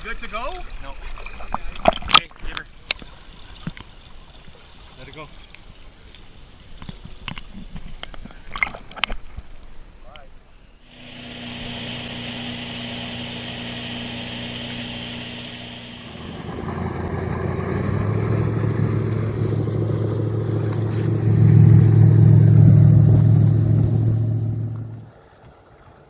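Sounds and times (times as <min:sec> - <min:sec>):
jet boat engine running: 0:10.9 - 0:25.1.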